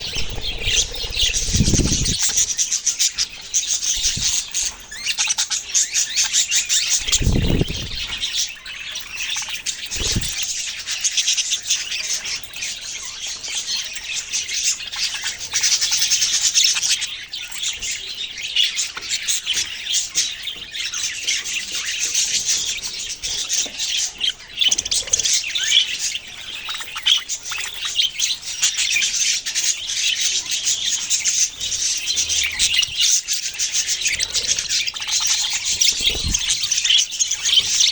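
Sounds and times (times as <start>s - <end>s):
low thumps: 0.0s - 2.4s
small birds chirping: 0.0s - 37.9s.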